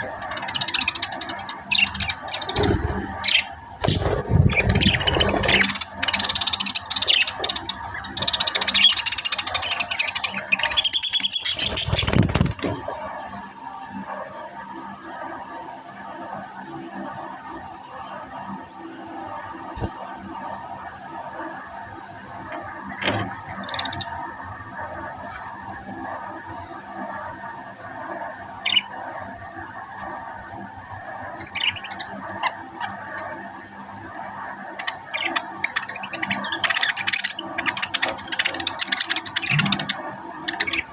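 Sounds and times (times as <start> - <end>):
budgerigars chattering: 0.0 - 12.6, 34.8 - 40.9
steady background noise: 0.0 - 40.9.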